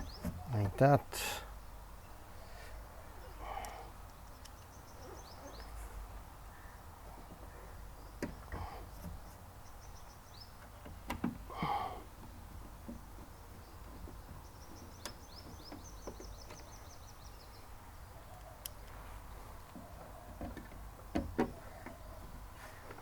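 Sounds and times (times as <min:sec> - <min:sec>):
small bird chirping: 0:00.0 - 0:00.6, 0:01.5 - 0:10.9, 0:13.2 - 0:18.9.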